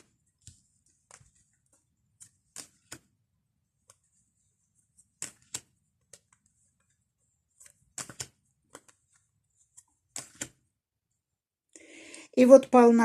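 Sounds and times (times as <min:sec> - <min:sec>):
playing cards being shuffled: 0:00.0 - 0:04.1, 0:04.8 - 0:06.9, 0:07.5 - 0:10.6.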